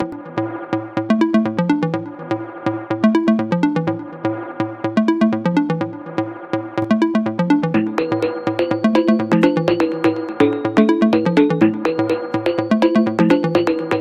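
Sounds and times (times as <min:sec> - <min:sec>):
electronic music: 0:00.0 - 0:14.0.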